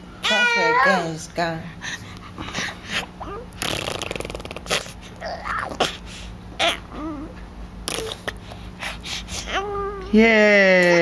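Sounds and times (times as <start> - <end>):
baby blowing raspberries: 3.6 - 6.0, 7.8 - 9.6
baby squeaky vocal noise: 6.6 - 7.3.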